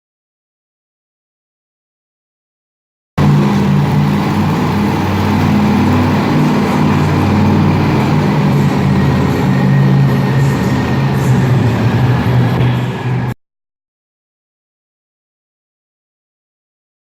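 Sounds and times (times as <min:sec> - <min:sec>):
large engine running: 0:03.2 - 0:13.4.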